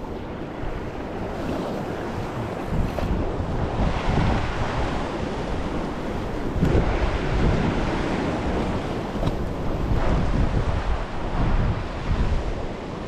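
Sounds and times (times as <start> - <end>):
rough surf rushing: 0.0 - 13.0
wind buffeting microphone: 0.0 - 13.0.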